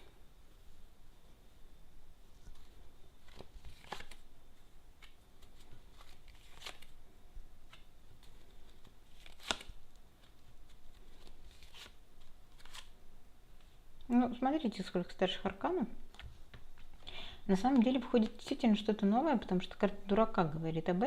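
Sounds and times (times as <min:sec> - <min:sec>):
cards snapping and flicking: 0:09.2 - 0:09.8.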